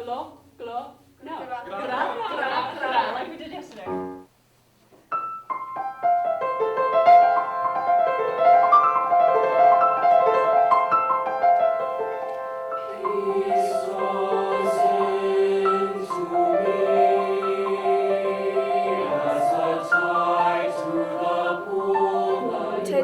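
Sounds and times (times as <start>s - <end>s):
piano quick notes: 3.8s - 4.3s.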